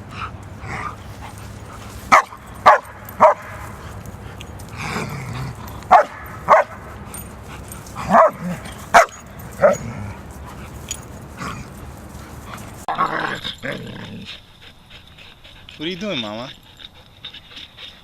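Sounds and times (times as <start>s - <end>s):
dog barking and yipping: 0.0s - 12.9s.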